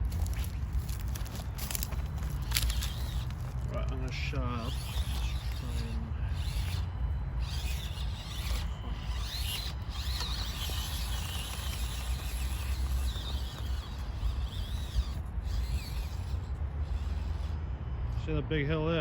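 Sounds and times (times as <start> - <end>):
small electric motor whining: 0.0 - 18.4.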